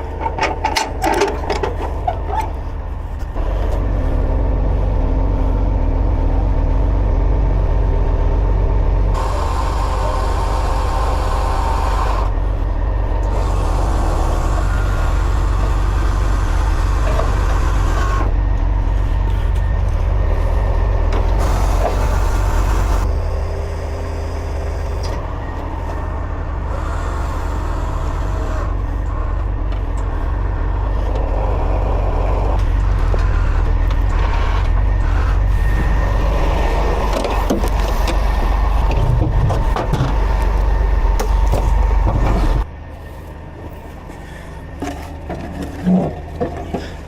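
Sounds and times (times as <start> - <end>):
metal clatter: 0.0 - 2.5
diesel engine rumbling: 0.0 - 47.0.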